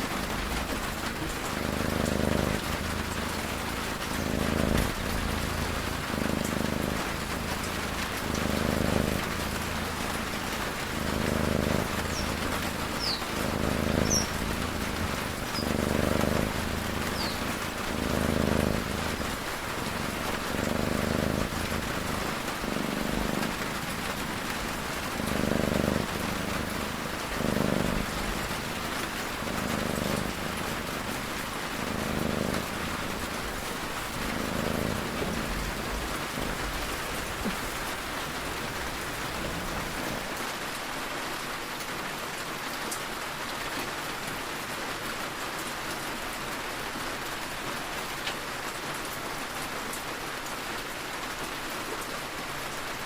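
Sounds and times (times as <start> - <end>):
cat snoring: 0.0 - 40.4
steady rain: 0.0 - 53.0.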